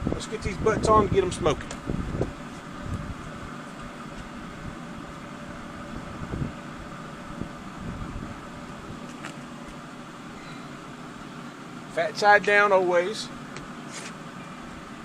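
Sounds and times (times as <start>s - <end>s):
smoker fan humming: 0.0s - 15.0s.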